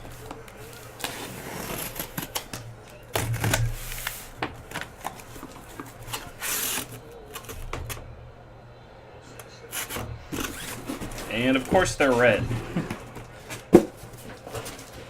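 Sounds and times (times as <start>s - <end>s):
faint low hum: 0.0s - 15.0s
scratchy tearing sound: 0.9s - 2.6s.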